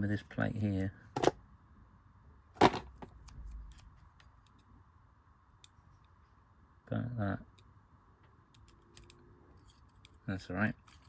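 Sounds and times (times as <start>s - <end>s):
light clicks of plastic parts: 7.5s - 11.0s.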